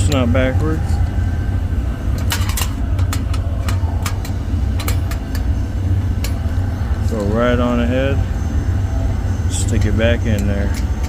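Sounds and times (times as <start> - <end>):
low rumble: 0.0 - 11.0
padlock metal parts clicking: 2.2 - 5.5.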